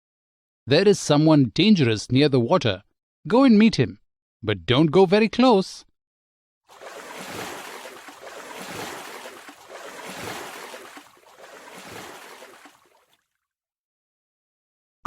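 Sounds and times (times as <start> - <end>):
waves washing: 6.7 - 13.0.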